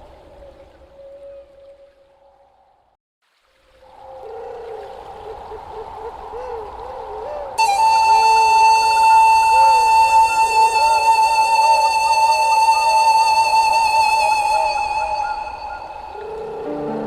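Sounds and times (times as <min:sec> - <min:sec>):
long held wavering high note: 0:07.6 - 0:17.0.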